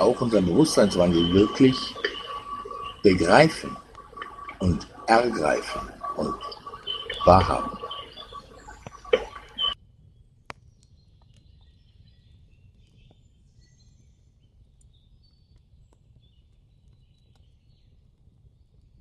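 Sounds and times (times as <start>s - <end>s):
bird chirps: 0.0s - 9.8s
low steady background noise: 0.0s - 11.0s.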